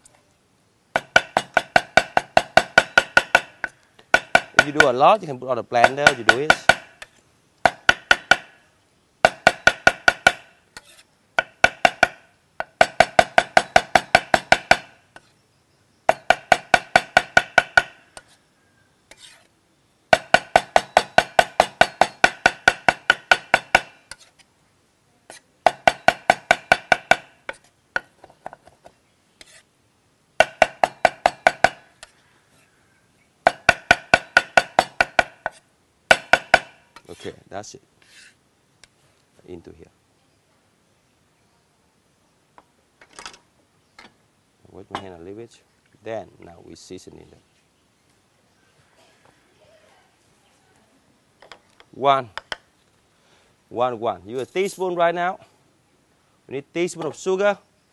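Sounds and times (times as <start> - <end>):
knife chopping on a board: 5.8 - 6.9.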